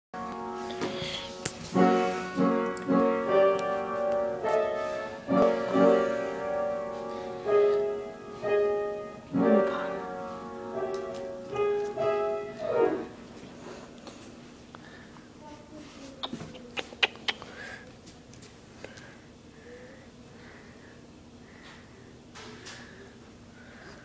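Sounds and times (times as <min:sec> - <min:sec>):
piano melody of single notes: 0:00.2 - 0:13.2.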